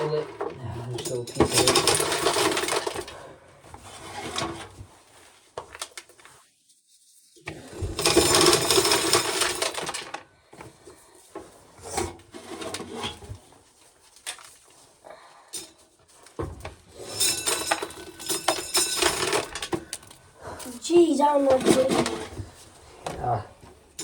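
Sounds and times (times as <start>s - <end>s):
corn sheller rattling: 1.0s - 3.1s, 7.9s - 10.2s, 17.0s - 20.2s, 20.8s - 22.4s.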